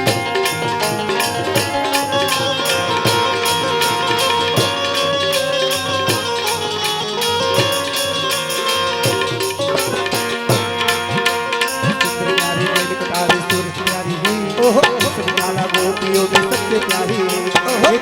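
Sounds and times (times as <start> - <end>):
hand drum rhythm: 0.0 - 18.0
sustained melody: 0.0 - 18.0.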